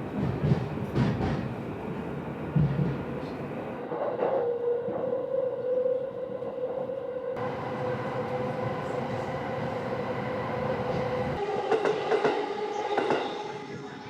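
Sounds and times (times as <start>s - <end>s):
train cars rumbling: 7.4s - 11.4s.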